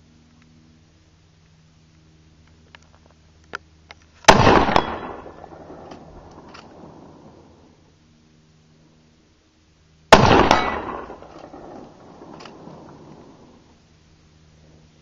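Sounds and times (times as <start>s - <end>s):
rifle shot with rolling echo: 4.2s - 7.7s, 10.1s - 13.7s.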